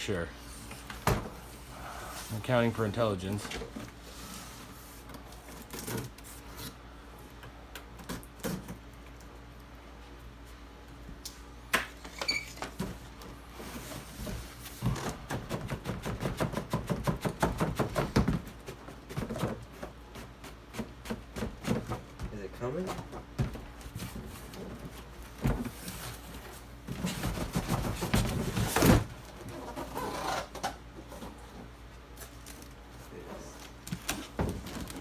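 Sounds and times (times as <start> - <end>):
cardboard knocks and rustles: 14.0 - 29.4, 33.9 - 35.0.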